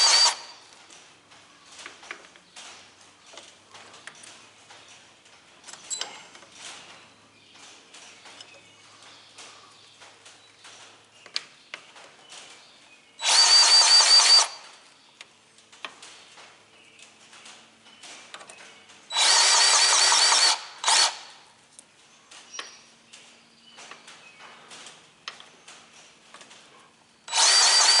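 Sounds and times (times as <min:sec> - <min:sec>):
grease gun motor whine: 0:00.0 - 0:00.6, 0:13.2 - 0:14.6, 0:19.1 - 0:21.4, 0:27.3 - 0:28.0.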